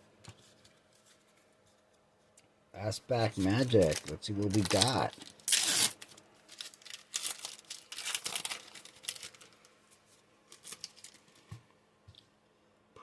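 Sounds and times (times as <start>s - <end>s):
trading cards being handled: 3.2s - 9.6s
wrapper crinkling: 3.2s - 9.8s, 10.5s - 11.5s.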